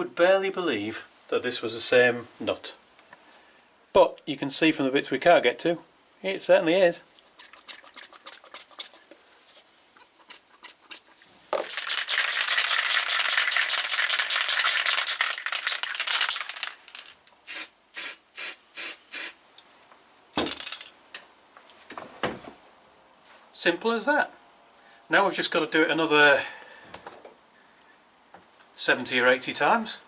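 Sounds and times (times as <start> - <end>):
aerosol spray can hissing: 17.4 - 19.4.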